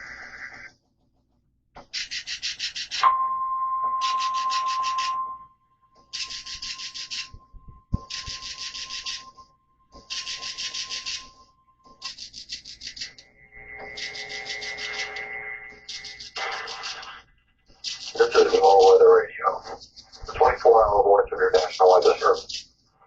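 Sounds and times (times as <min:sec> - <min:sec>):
harsh static bursts: 0:13.8 - 0:22.6.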